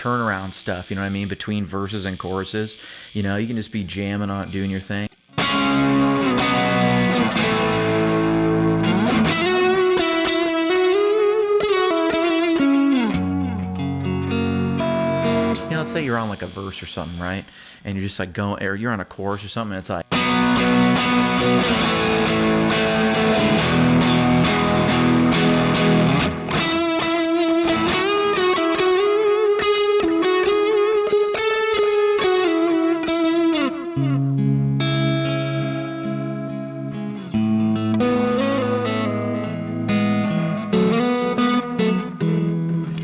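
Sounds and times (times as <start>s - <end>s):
distorted electric guitar chords: 4.5s - 16.6s, 20.1s - 43.0s
electric guitar lead with bends: 5.3s - 16.6s, 20.1s - 43.0s.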